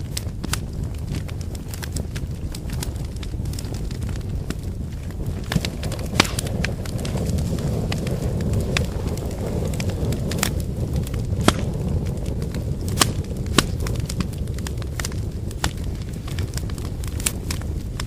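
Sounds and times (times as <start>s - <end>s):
fire flame rushing: 0.0s - 18.0s
wood crackling and popping: 0.0s - 18.0s.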